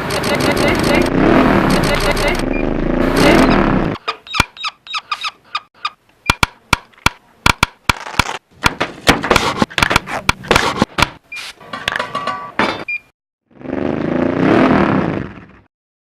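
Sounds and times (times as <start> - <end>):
sharp ringing clicks and knocks: 0.0 - 1.0.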